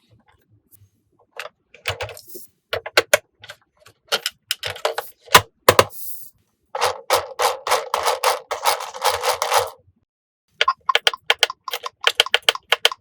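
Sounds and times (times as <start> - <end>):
plastic toy clicks and taps: 10.6 - 13.0.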